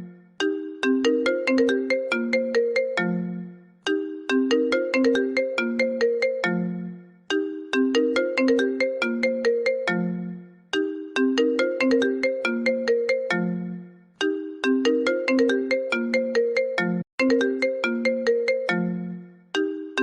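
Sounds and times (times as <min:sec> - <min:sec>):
phone ringtone melody: 0:00.0 - 0:20.0.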